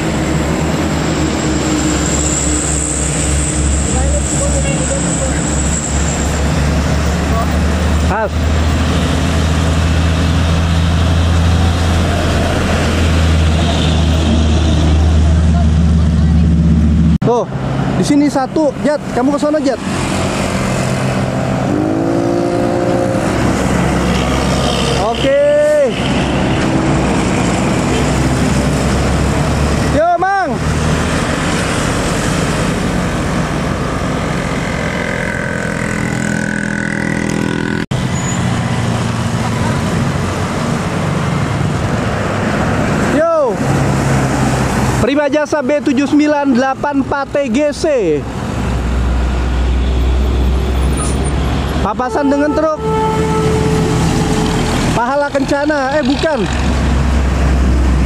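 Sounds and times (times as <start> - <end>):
road noise: 0.0 - 58.0
vehicle engine droning: 0.0 - 58.0
heavy vehicle engine running: 48.2 - 58.0.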